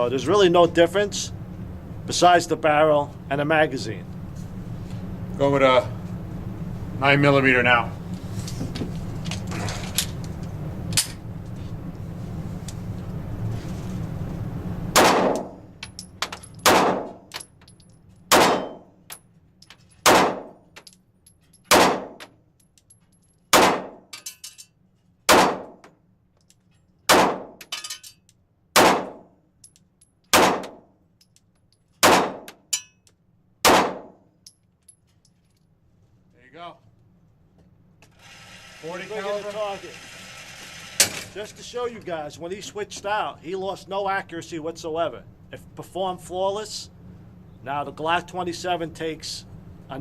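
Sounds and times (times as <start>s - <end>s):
pistol shots: 15.0s - 15.6s, 16.6s - 17.2s, 18.3s - 18.8s, 20.0s - 20.6s, 21.7s - 22.2s, 23.5s - 24.0s, 25.3s - 25.8s, 27.1s - 27.6s, 28.8s - 29.3s, 30.3s - 30.8s, 32.0s - 32.5s, 33.6s - 34.2s.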